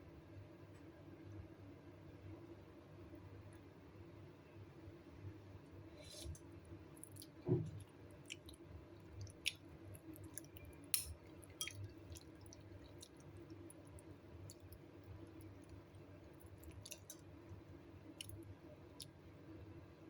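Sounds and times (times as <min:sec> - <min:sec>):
person chewing: 0:07.0 - 0:17.2.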